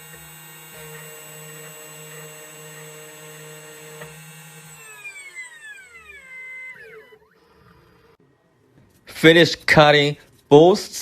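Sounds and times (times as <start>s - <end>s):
key cutting machine motor whining: 0.0s - 8.0s.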